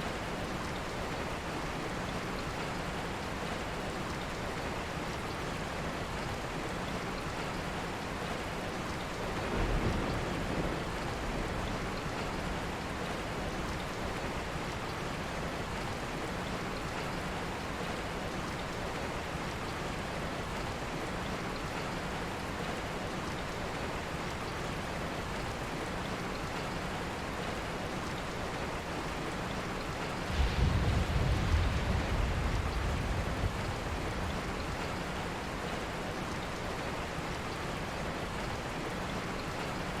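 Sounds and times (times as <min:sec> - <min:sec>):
rain falling: 0:00.0 - 0:40.0
low rumble: 0:30.3 - 0:34.5.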